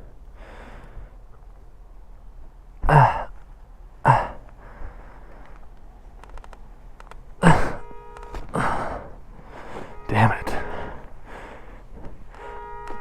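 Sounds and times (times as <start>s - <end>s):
person breathing out hard: 0.4s - 1.2s, 7.4s - 7.8s, 8.5s - 12.6s.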